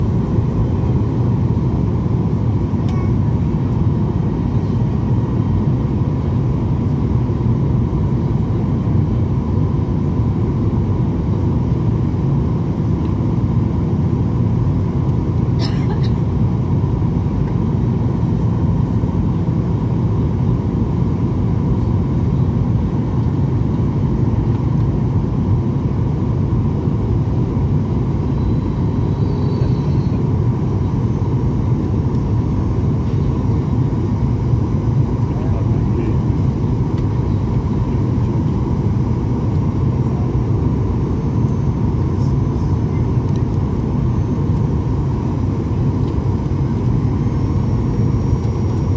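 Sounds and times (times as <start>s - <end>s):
faint high whine: 28.1s - 34.3s.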